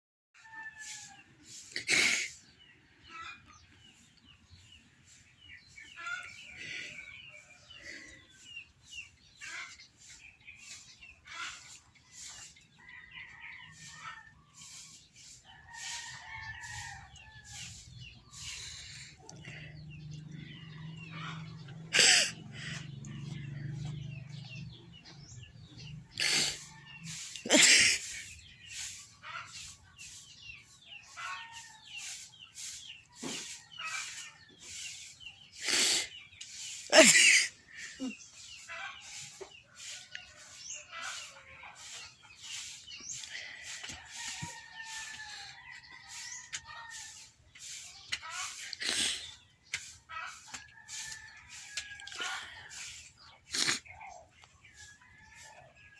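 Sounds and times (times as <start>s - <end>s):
chirping bird calls: 0.4s - 55.9s
rooster crowing: 15.6s - 17.8s, 44.2s - 46.6s
sharp breathy intakes of breath: 17.5s - 23.4s
person sneezing: 27.5s - 28.2s, 36.9s - 38.1s.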